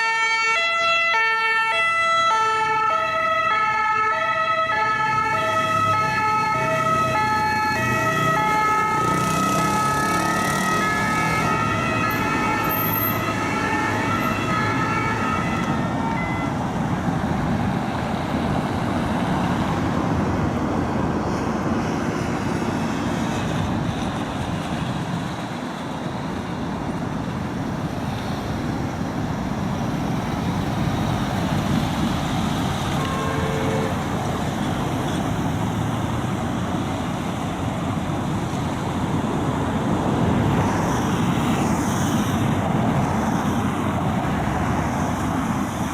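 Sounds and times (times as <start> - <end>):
two-tone emergency siren: 0.0 - 16.6, 32.8 - 34.1
street traffic noise: 0.0 - 45.9.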